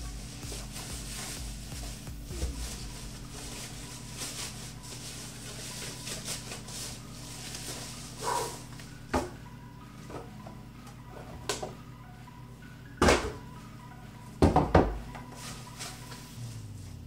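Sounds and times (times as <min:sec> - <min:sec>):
low steady hum: 0:00.0 - 0:14.4, 0:15.0 - 0:17.0
objects knocking and clunking: 0:14.4 - 0:15.2.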